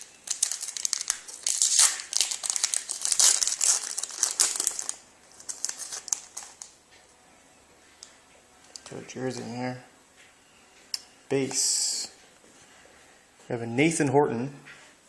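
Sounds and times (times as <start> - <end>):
wrapper torn and crinkled: 0.0 - 6.8.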